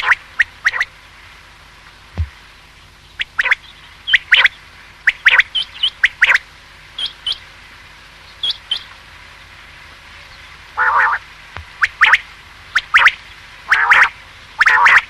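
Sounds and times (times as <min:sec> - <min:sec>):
quail calling: 0:00.0 - 0:00.9, 0:03.2 - 0:06.4, 0:07.0 - 0:07.4, 0:10.8 - 0:15.0.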